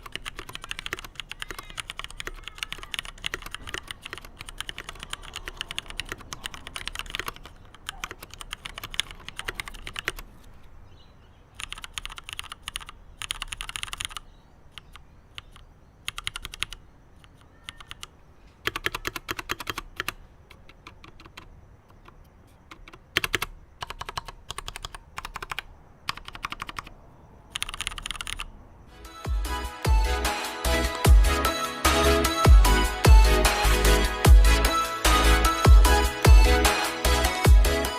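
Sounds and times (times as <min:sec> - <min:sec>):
mechanical keyboard typing: 0:00.0 - 0:10.3, 0:11.5 - 0:26.9, 0:27.5 - 0:28.5.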